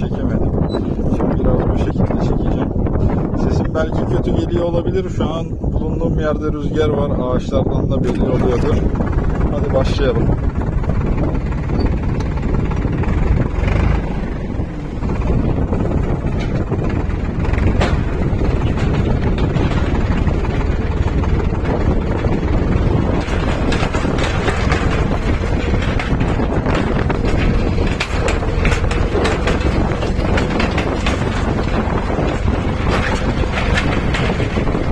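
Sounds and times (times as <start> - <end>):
tractor engine running: 0.0 - 34.9
wind buffeting microphone: 0.0 - 34.9
short sharp rattles: 8.0 - 34.9.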